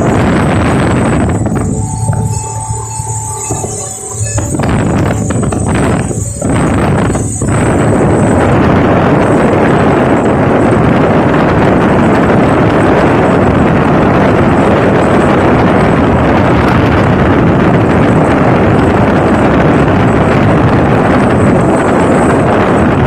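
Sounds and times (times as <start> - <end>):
motorboat engine running: 0.0 - 23.0
wind buffeting microphone: 0.0 - 23.0.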